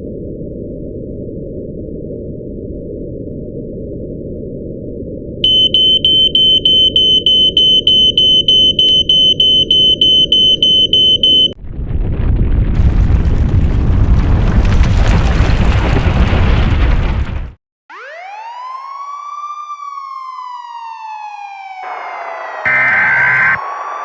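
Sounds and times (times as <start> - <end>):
smoke alarm beeping: 5.4 - 11.6
deep earthquake rumble: 11.6 - 17.6.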